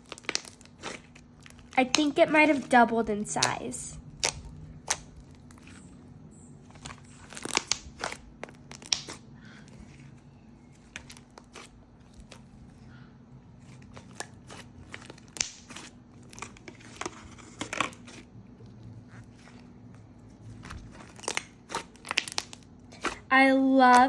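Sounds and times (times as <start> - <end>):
sticky slime clicks and pops: 4.2 - 5.1, 7.4 - 9.2, 15.3 - 15.8, 21.3 - 22.6
slime snapping: 4.2 - 5.7, 6.8 - 9.2, 14.5 - 16.5, 21.2 - 23.2.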